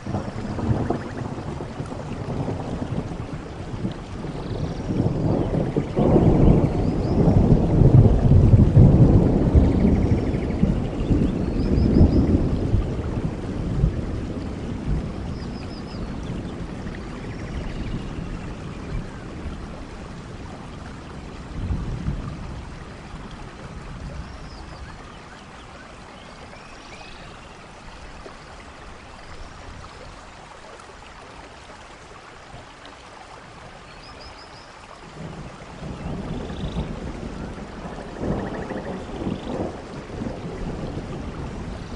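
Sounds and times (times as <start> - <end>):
thunder rumbling: 0.0 - 25.0, 35.1 - 41.9
steady rainfall: 0.0 - 41.9.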